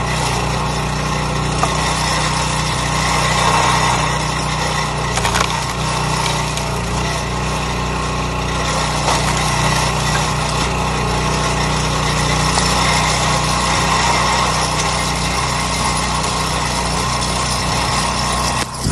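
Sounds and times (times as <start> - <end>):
small gas engine running: 0.0 - 18.9.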